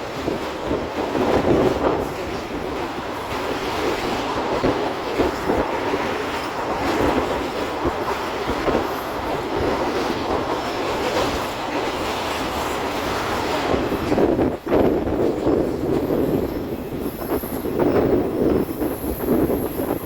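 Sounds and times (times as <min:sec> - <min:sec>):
train wheels rumbling on rails: 0:00.0 - 0:20.0.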